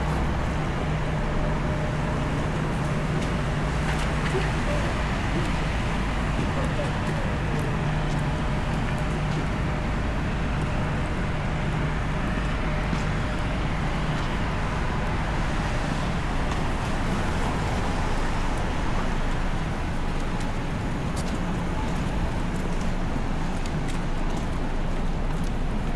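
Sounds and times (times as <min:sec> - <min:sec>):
low engine hum: 0:00.0 - 0:25.9
street traffic rumble: 0:00.0 - 0:25.9.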